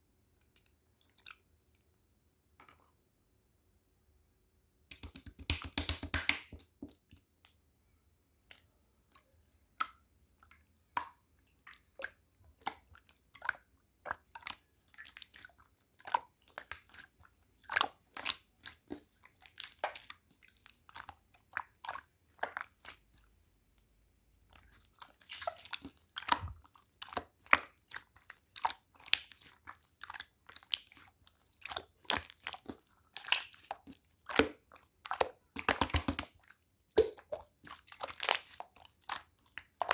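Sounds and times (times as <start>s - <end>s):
slime sticky clicks and pops: 4.9s - 6.7s.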